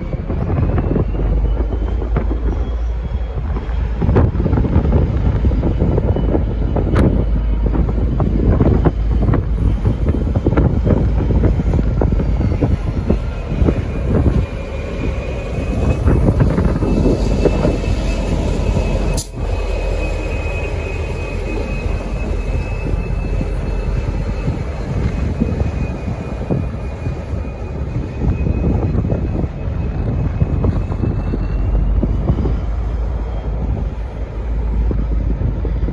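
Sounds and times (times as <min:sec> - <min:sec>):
high wheel squeal: 0:00.0 - 0:35.9
train rumble: 0:00.0 - 0:35.9
sharp click: 0:19.2 - 0:19.4.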